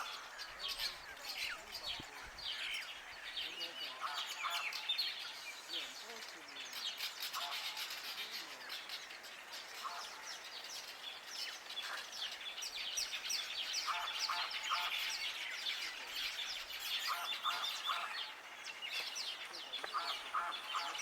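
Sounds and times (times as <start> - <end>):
birds chirping: 0.0 - 21.0
short low bird calls: 17.0 - 21.0.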